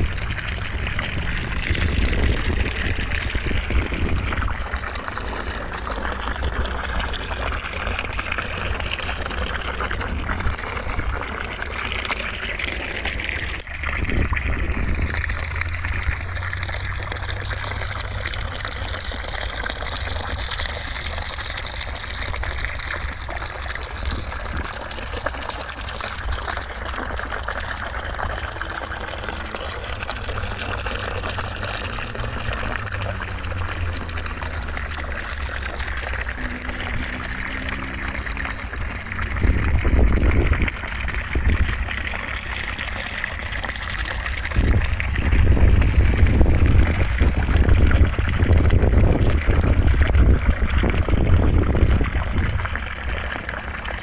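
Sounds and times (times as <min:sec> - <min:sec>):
low rumble: 0:44.6 - 0:50.5.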